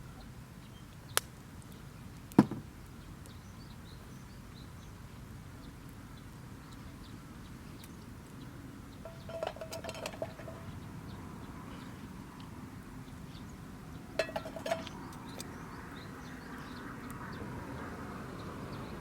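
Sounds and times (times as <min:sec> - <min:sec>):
metal cookware clinking: 0:09.0 - 0:10.8, 0:14.2 - 0:15.0.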